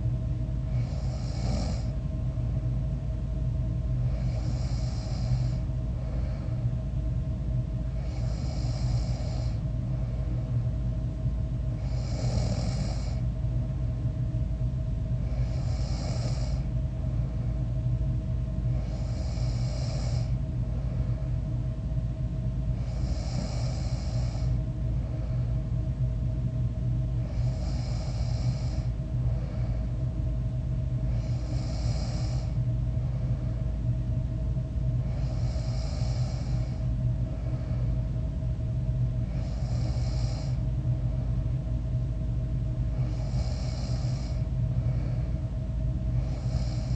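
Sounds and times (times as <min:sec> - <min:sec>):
steady low hum: 0:00.0 - 0:46.9
person snoring: 0:00.7 - 0:01.9, 0:04.1 - 0:05.6, 0:08.0 - 0:09.6, 0:11.8 - 0:13.2, 0:15.2 - 0:16.7, 0:18.7 - 0:20.4, 0:22.8 - 0:24.6, 0:27.2 - 0:29.8, 0:31.1 - 0:32.6, 0:35.1 - 0:36.8, 0:39.3 - 0:40.6, 0:43.0 - 0:45.3, 0:46.2 - 0:46.9.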